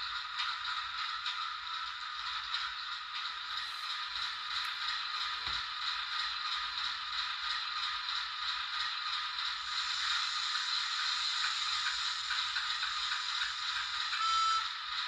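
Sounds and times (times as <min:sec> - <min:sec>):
model train diesel engine sound: 0:00.0 - 0:15.0.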